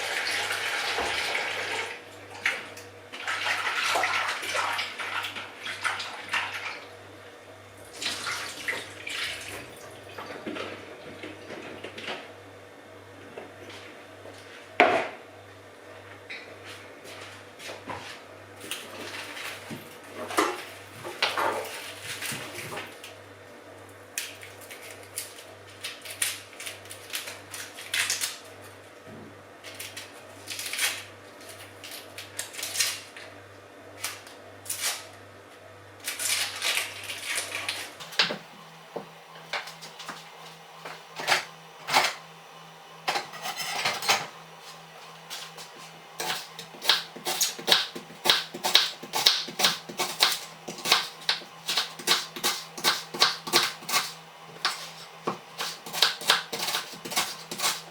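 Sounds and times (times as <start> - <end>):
pots and dishes clinking: 43.1 - 44.3.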